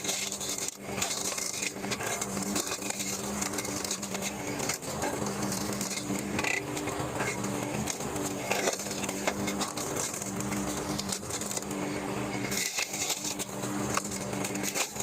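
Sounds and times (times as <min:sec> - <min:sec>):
lawnmower engine running: 0:00.0 - 0:15.0.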